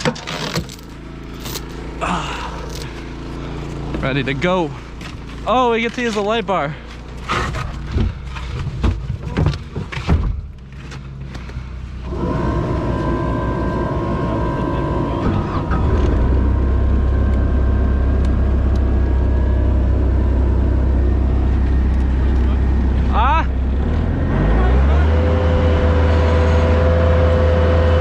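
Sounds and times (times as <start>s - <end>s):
machine engine rumbling: 0.0s - 28.0s
clunks and knocks: 6.9s - 11.6s.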